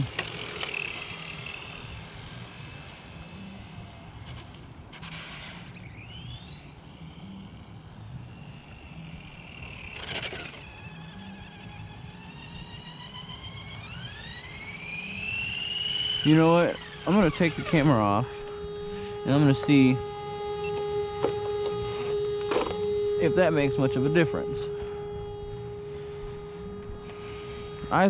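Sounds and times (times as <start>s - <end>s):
rc car motor whining: 0.0s - 28.0s.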